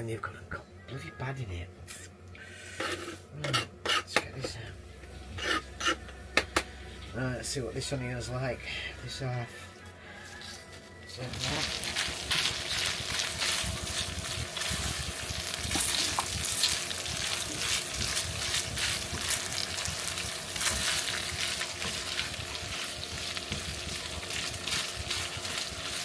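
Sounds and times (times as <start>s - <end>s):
vegetables sizzling in a pan: 11.2s - 26.0s.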